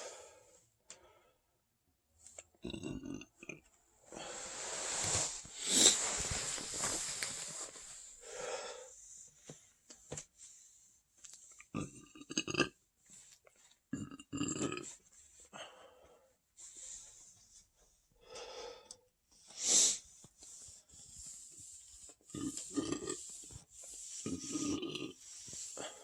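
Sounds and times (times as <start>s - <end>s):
person burping: 2.6s - 3.7s, 11.7s - 12.8s, 13.9s - 14.9s, 22.3s - 23.2s.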